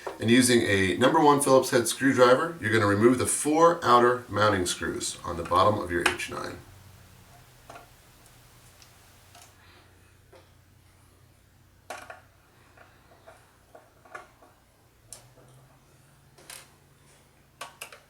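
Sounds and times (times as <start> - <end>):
low steady hum: 0.0 - 9.6.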